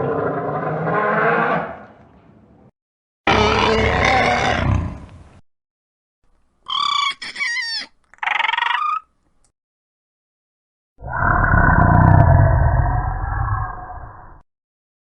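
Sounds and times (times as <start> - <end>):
dinosaur roar: 0.0 - 1.9, 3.3 - 5.1, 11.0 - 14.4
high-pitched screeching calls: 6.6 - 9.1.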